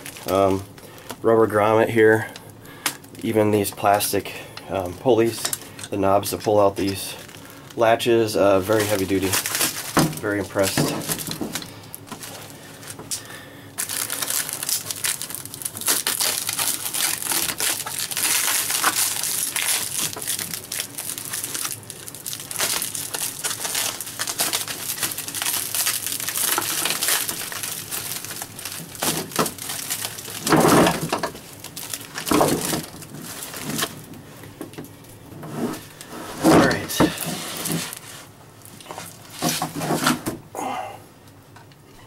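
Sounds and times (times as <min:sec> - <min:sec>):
packaging crinkling: 0:00.0 - 0:01.2, 0:04.8 - 0:40.1.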